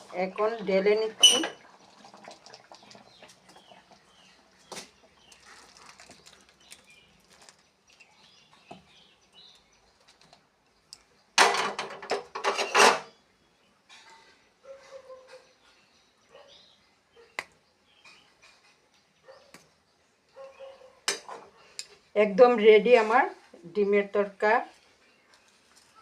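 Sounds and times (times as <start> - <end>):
spoon scraping a pan: 1.0 - 1.6.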